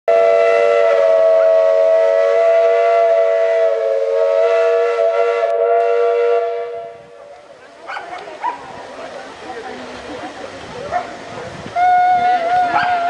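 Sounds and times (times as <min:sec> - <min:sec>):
steam whistle blast: 0:00.1 - 0:07.2, 0:11.8 - 0:13.0.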